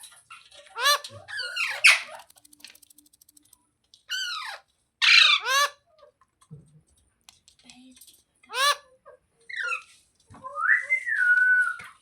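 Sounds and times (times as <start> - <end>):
parrot squawking: 0.7 - 2.3, 4.1 - 5.8.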